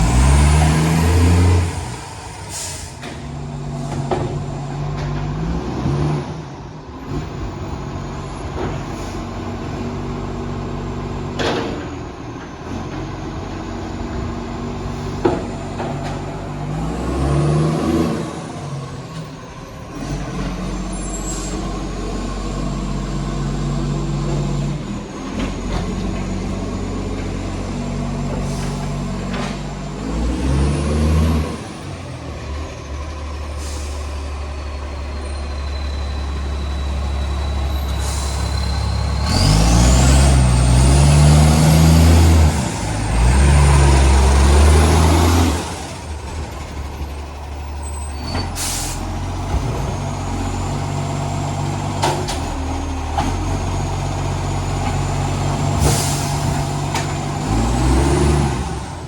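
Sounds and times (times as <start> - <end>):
garbage truck engine revving: 0.0 - 59.0
sharp air hisses: 2.4 - 3.1, 48.6 - 49.1, 55.8 - 56.4.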